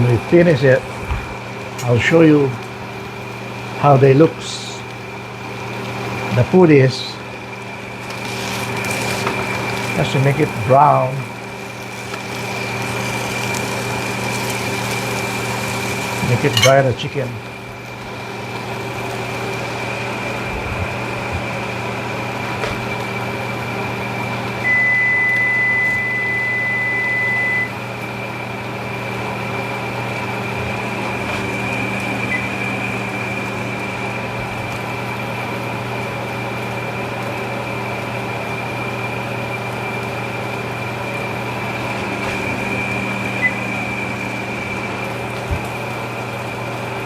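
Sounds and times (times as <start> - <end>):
kitchen fan humming: 0.0 - 47.0
chicken cooking in a pan: 7.4 - 16.5.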